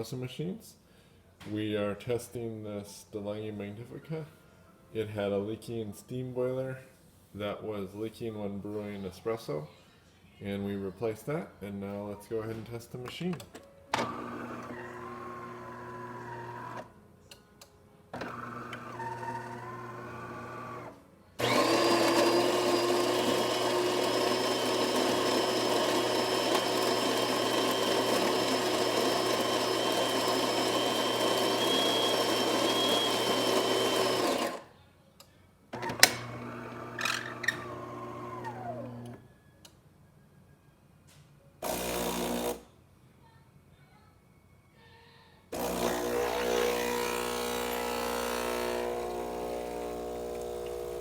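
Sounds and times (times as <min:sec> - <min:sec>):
motor hum winding down: 0:14.0 - 0:16.8, 0:18.2 - 0:34.6, 0:35.8 - 0:39.2, 0:45.6 - 0:51.0
coffee grinder running: 0:14.0 - 0:16.9, 0:18.2 - 0:34.7, 0:35.8 - 0:39.2, 0:41.6 - 0:42.6, 0:45.6 - 0:51.0.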